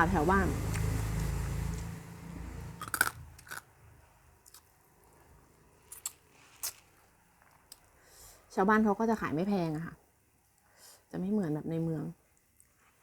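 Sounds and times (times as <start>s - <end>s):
person chewing food: 4.4s - 8.0s.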